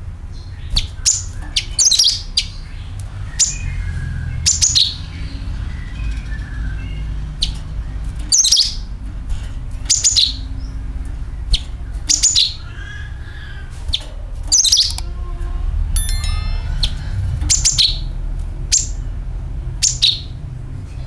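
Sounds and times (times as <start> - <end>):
bird chirping: 14.5 - 15.0.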